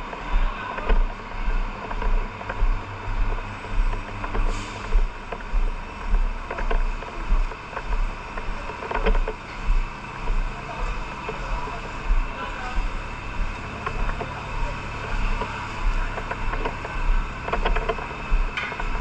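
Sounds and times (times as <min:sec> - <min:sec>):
engine throbbing: 0:00.0 - 0:19.0
scattered clicks: 0:00.1 - 0:01.2, 0:01.8 - 0:19.0
short hiss: 0:04.5 - 0:04.9.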